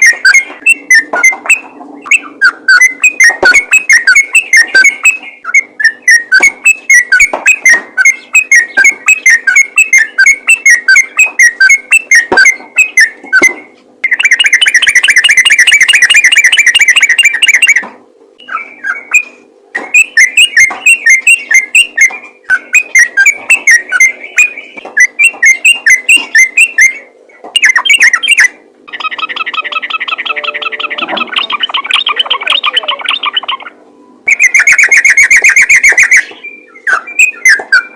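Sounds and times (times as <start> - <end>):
bulbul song: 0.0 - 37.9.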